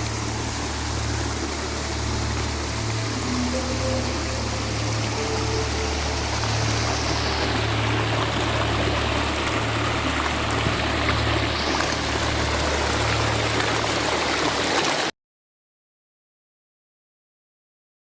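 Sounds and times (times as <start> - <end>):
low hum: 0.0 - 14.3
river water flowing: 0.0 - 15.1.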